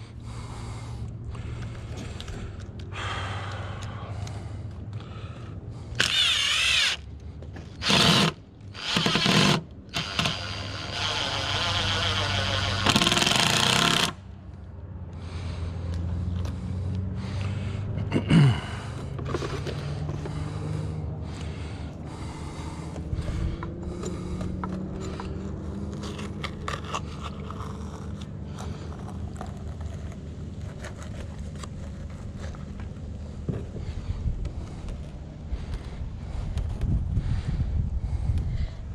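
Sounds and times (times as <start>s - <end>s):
low motor hum: 0.0s - 38.9s
power drill whining: 5.9s - 14.2s.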